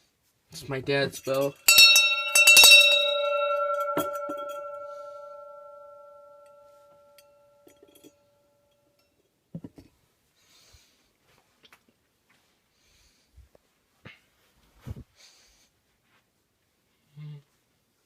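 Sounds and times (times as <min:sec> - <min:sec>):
small metal bell ringing: 0:01.2 - 0:09.0.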